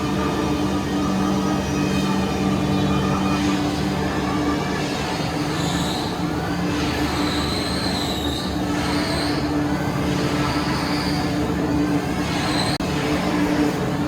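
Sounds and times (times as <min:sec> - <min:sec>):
sawmill machinery hum: 0:00.0 - 0:14.0
high wavering squeal: 0:05.3 - 0:13.0.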